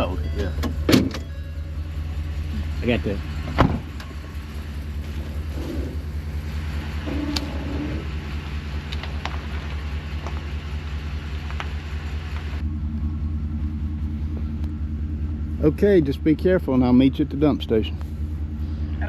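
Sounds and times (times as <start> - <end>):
vehicle engine idling: 0.0 - 19.0.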